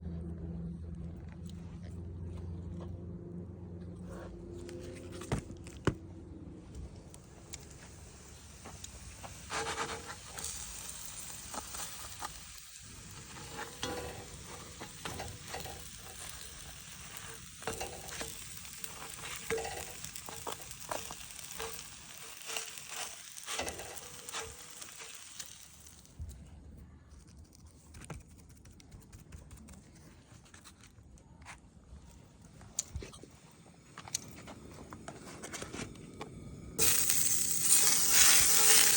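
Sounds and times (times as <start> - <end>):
burger patties sizzling: 7.2 - 26.2, 36.8 - 38.9.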